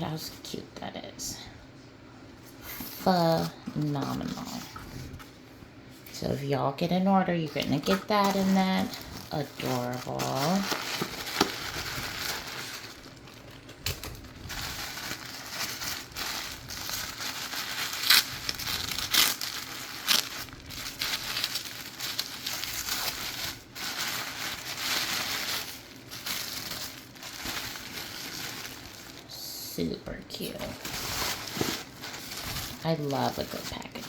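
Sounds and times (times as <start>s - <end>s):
paper crinkling and rustling: 7.4s - 29.3s, 30.4s - 34.0s
sharp paper crackles: 7.5s - 29.3s, 30.5s - 34.0s.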